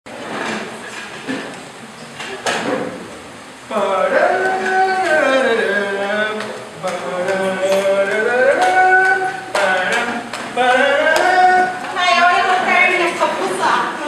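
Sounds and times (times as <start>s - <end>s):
person singing long held notes: 3.7s - 12.7s.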